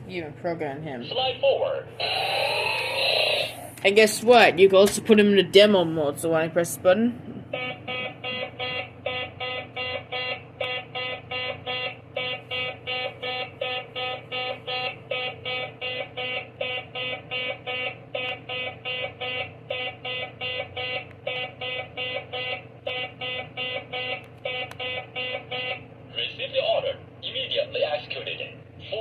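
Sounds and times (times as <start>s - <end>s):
toy robot beeping: 2.0s - 3.7s.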